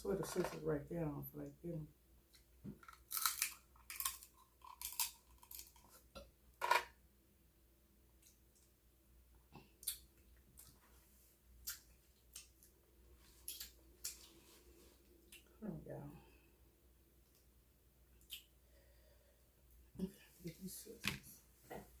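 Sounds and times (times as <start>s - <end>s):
crab shells cracking: 2.8s - 6.0s.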